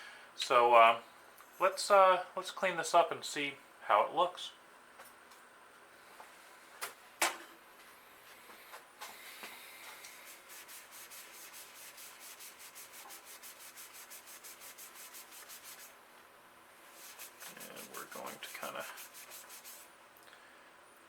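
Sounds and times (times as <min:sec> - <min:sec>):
rag wiping a metal frame: 0:10.0 - 0:16.0, 0:16.9 - 0:19.9.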